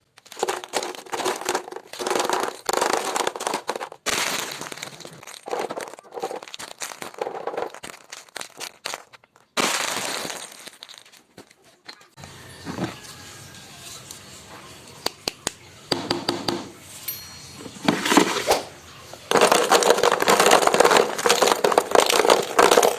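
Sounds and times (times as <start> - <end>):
plastic toys crinkling and clicking: 0.0 - 15.6, 17.6 - 22.9.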